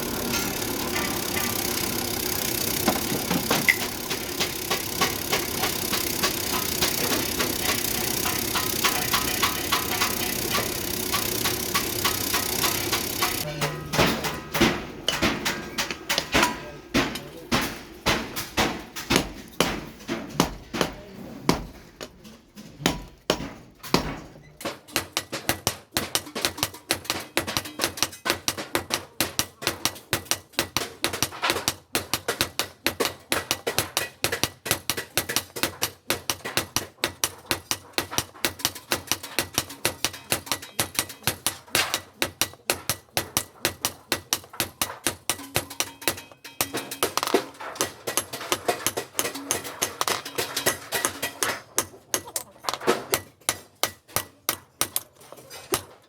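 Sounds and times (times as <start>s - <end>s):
hammer striking steel: 0.0s - 21.6s, 32.0s - 52.3s.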